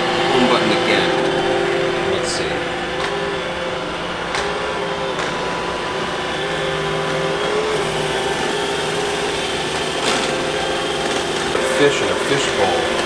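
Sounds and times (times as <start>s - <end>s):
robot vacuum motor hum: 0.0s - 13.0s
click: 2.8s - 13.0s.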